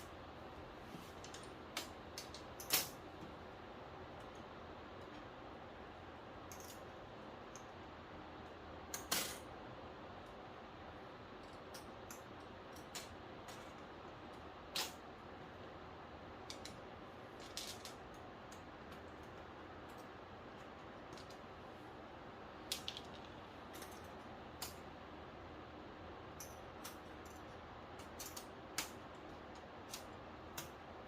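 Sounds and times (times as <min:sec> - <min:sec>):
small hard parts clicking: 0:06.5 - 0:06.9, 0:26.4 - 0:30.8.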